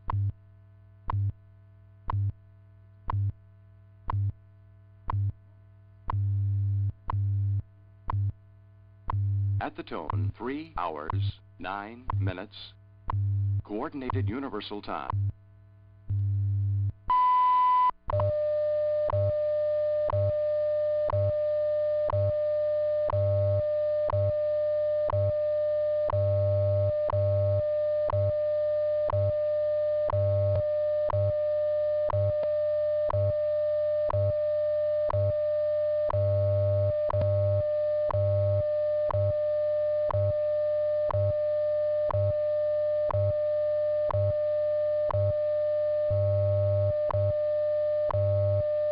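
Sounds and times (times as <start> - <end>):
low pulsing hum: 0.0 - 17.1
steady audio tone: 0.0 - 48.9
radio hiss: 9.6 - 12.8, 13.6 - 15.2.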